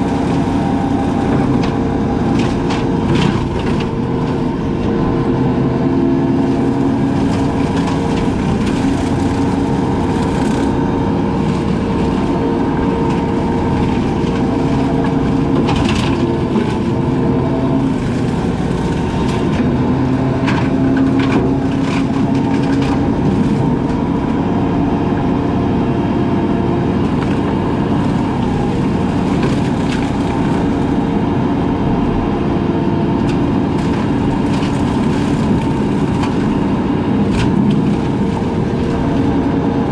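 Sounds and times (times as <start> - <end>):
wood cracking and splintering: 0.0 - 25.5, 26.5 - 39.9
brush cutter running: 6.2 - 25.2.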